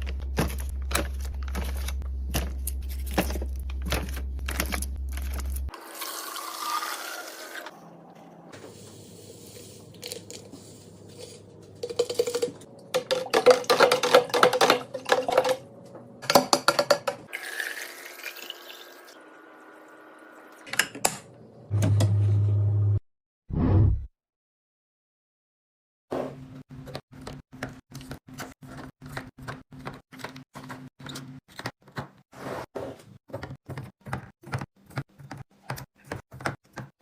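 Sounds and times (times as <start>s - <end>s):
containers and lids clicking: 11.8s - 15.6s, 16.2s - 17.2s
liquid pouring into containers: 17.3s - 20.5s.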